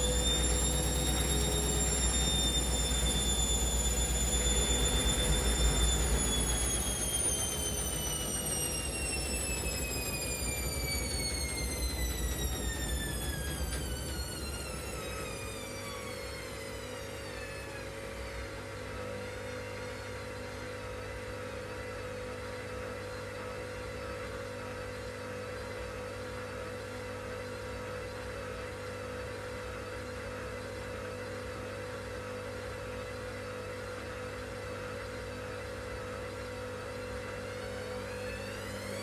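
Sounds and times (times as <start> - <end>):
constant whine: 0.0 - 18.6, 36.7 - 39.0
washing machine motor hum: 0.0 - 39.0.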